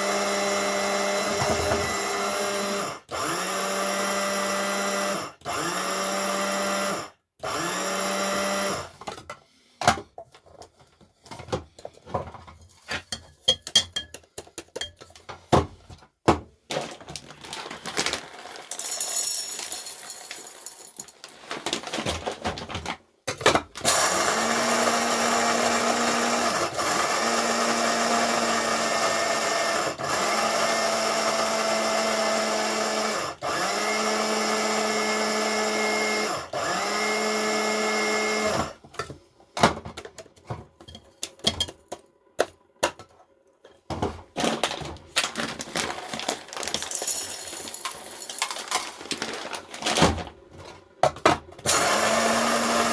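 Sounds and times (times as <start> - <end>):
coffee grinder motor: 0.0 - 9.0, 23.8 - 38.8, 51.7 - 52.9.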